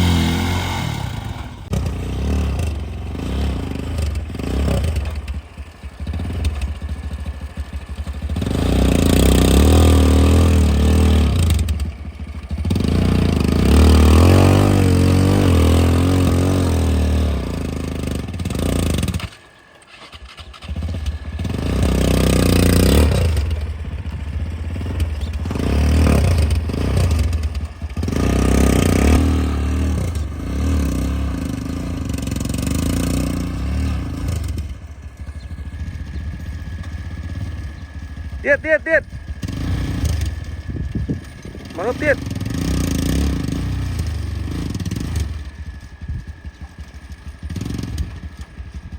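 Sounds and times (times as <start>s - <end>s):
bulldozer diesel engine running hard: 0.0s - 48.9s.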